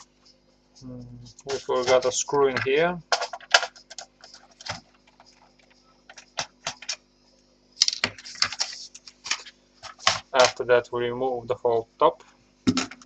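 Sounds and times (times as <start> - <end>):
plastic parts scraping: 1.4 - 5.5, 7.8 - 10.6.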